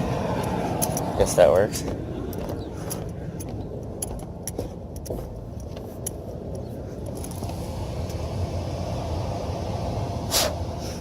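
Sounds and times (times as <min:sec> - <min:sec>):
steady low rumble: 0:00.0 - 0:11.0
small metal items jingling: 0:00.4 - 0:07.5.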